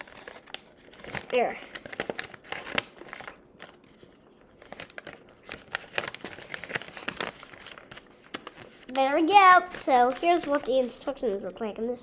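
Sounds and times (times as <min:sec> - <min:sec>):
paper crinkling and rustling: 0:00.0 - 0:11.7.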